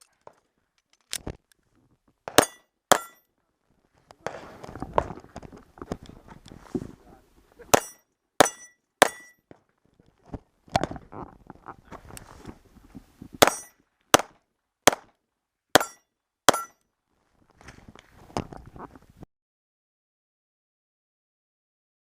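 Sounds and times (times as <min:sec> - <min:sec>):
pistol shots ringing steel targets: 0:02.3 - 0:03.2, 0:07.7 - 0:09.4, 0:13.4 - 0:14.3, 0:15.8 - 0:16.8.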